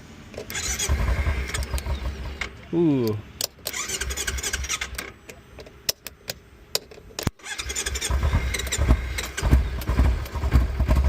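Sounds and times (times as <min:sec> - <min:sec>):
motorcycle engine idling: 0:00.6 - 0:03.0, 0:07.6 - 0:11.0
starter solenoid clicks and snaps: 0:03.4 - 0:04.1.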